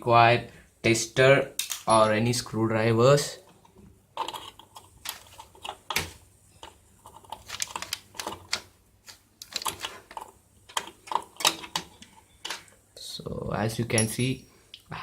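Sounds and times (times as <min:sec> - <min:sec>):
screwdriver clicking and scraping metal: 0:04.2 - 0:12.7.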